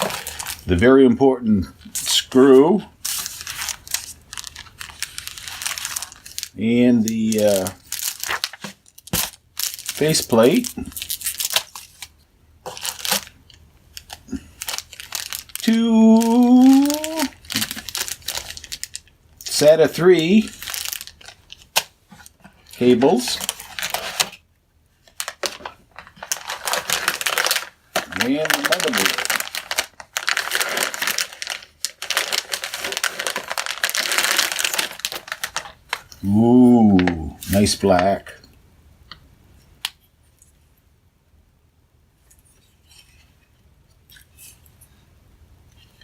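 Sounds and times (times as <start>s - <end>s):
packaging crinkling: 0.0s - 0.7s, 3.0s - 24.4s, 25.0s - 36.2s
person speaking drawn-out word: 15.6s - 17.4s, 28.1s - 29.4s, 36.2s - 38.4s.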